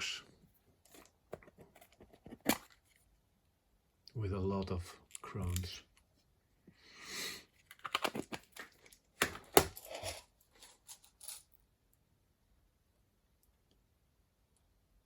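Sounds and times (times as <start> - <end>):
small metal parts clicking and rattling: 7.6 - 11.6
rustling scrape: 9.7 - 11.5.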